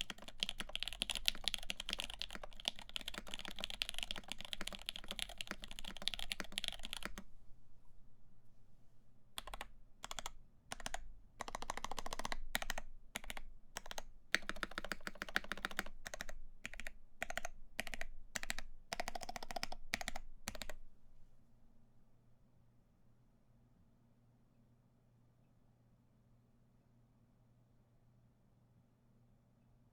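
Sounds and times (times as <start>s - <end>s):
mechanical keyboard typing: 0.0s - 7.3s, 9.4s - 20.8s.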